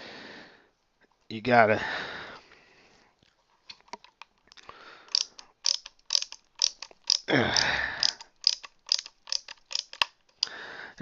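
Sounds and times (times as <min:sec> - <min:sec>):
screwdriver clicking: 0:05.1 - 0:10.5.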